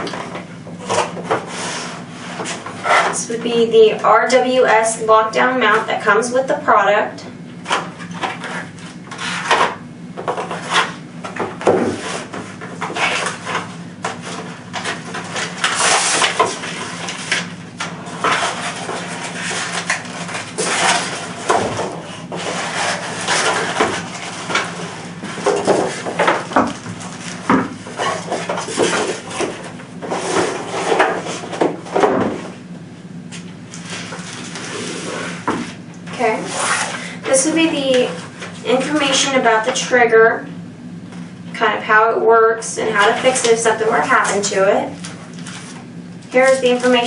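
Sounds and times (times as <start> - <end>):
low steady hum: 0.0 - 47.0
cardboard and plastic rustling: 7.7 - 32.6, 33.3 - 39.2, 43.0 - 47.0.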